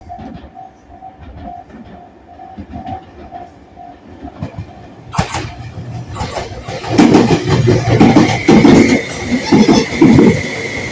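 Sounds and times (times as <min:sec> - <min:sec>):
train rumbling: 0:00.0 - 0:10.9
wheels clattering over rail joints: 0:04.1 - 0:10.4.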